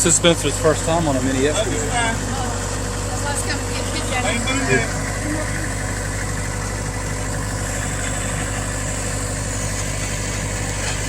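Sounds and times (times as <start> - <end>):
excavator engine running: 0.0 - 11.0.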